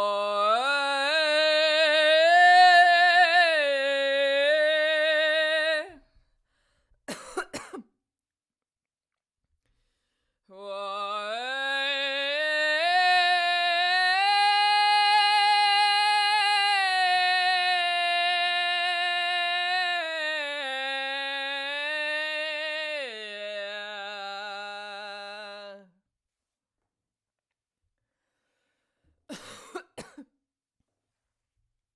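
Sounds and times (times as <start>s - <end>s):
woman singing unaccompanied: 0.0s - 6.0s, 10.5s - 26.0s.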